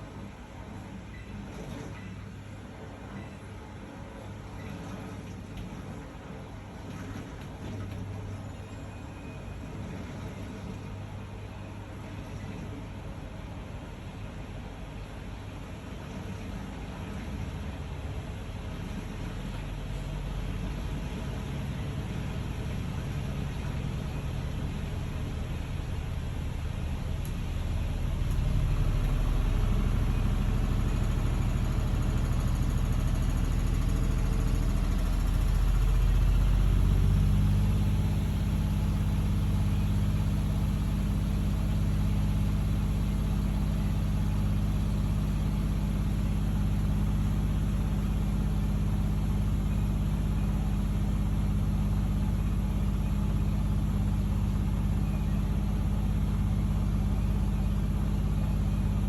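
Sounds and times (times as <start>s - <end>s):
washing machine drum spinning: 21.0s - 59.0s.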